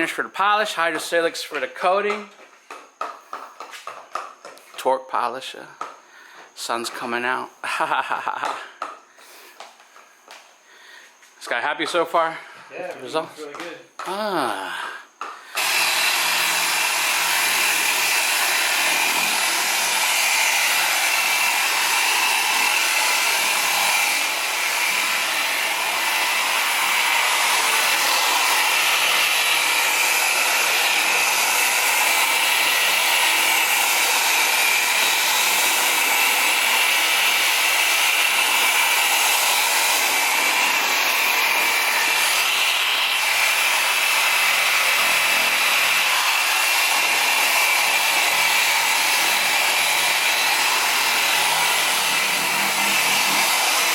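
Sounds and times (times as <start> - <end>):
electric polisher whining: 0.4 - 4.7, 12.8 - 53.9.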